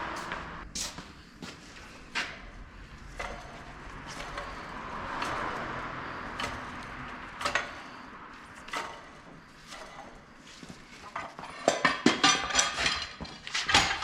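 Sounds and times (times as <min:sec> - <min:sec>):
tools clicking and knocking: 0:02.1 - 0:10.2, 0:11.0 - 0:14.0.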